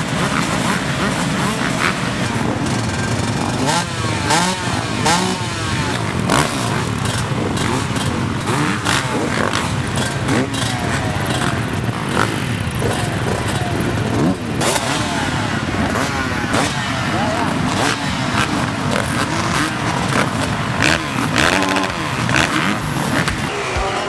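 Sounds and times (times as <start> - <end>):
motorcycle engines revving: 0.0 - 24.0.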